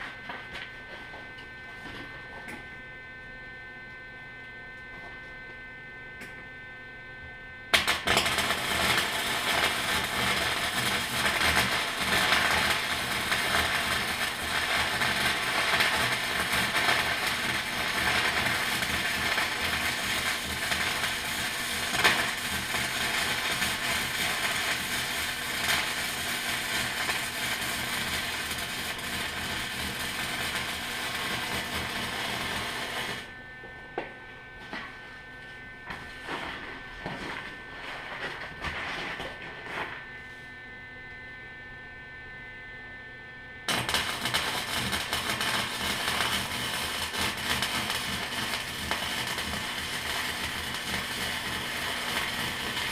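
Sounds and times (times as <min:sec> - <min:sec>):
welder arc crackling: 0:07.7 - 0:33.4, 0:43.6 - 0:52.9.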